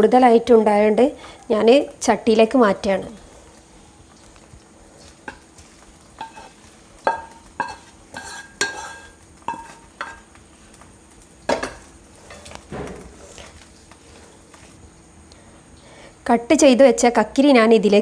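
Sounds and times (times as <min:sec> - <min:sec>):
metal spoon clinking on pan: 0:06.2 - 0:10.2.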